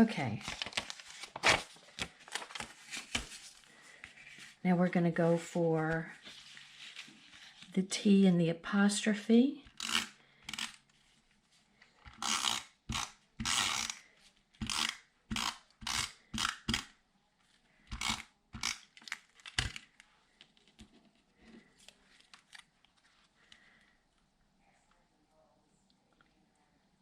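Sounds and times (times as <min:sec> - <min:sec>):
paper and card rustling: 0:00.0 - 0:04.6, 0:05.3 - 0:07.7, 0:17.4 - 0:23.7.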